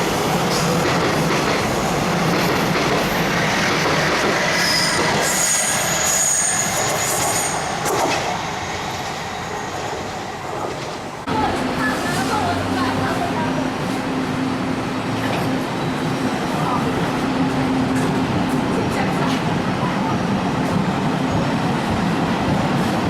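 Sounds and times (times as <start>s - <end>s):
train wheels rumbling on rail: 0.0s - 23.0s
high-pitched wheel squealing: 4.5s - 7.7s.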